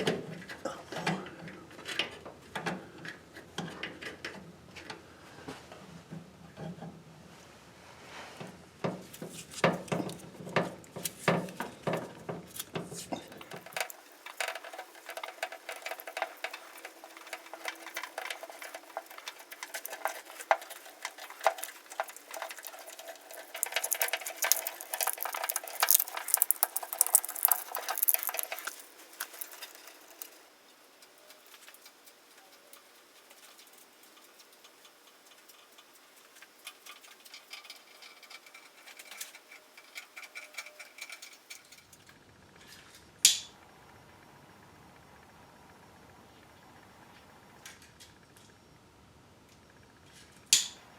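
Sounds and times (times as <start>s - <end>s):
small clicks and rattles of wiring: 9.1s - 43.4s.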